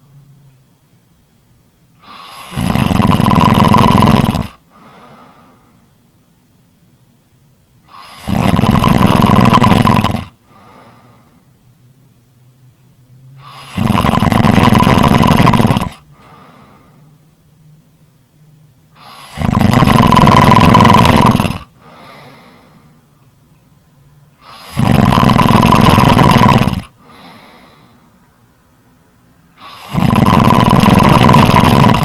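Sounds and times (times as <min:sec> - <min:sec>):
loud snoring: 0:02.0 - 0:05.0, 0:07.9 - 0:10.8, 0:13.4 - 0:16.4, 0:19.0 - 0:22.4, 0:24.4 - 0:27.4, 0:29.6 - 0:32.0
quiet breaths: 0:02.0 - 0:06.1, 0:07.8 - 0:11.9, 0:13.2 - 0:17.8, 0:18.8 - 0:32.0.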